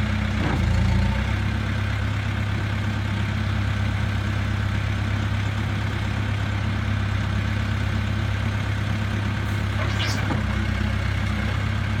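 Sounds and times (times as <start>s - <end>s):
diesel engine idling: 0.1s - 12.0s
rising squeak: 9.8s - 10.6s.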